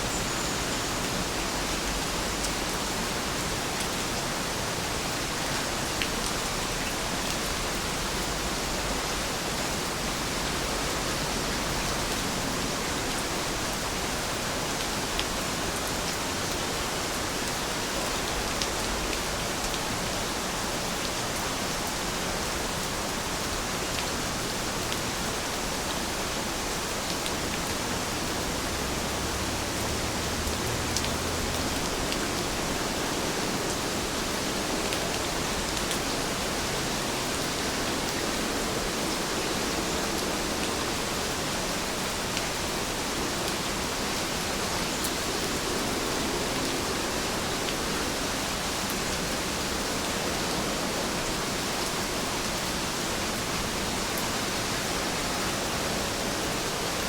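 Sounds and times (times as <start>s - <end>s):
steady rainfall: 0.0s - 57.0s
ticks of raindrops: 22.8s - 38.2s.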